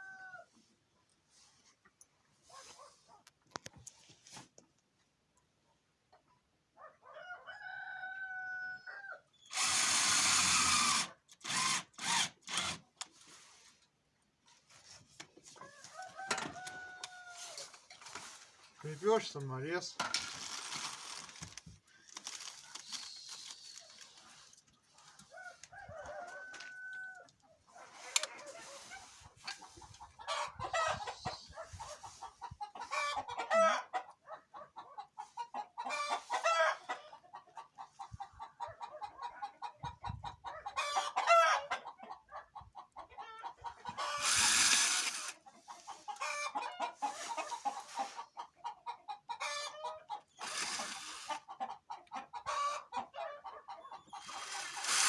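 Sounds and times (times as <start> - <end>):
rooster crowing: 7.0 - 9.2, 15.6 - 17.7, 25.2 - 27.3
cordless screwdriver driving screw: 9.5 - 12.8, 44.0 - 45.4, 50.4 - 51.4
chickens clucking: 21.4 - 44.5, 45.3 - 55.0.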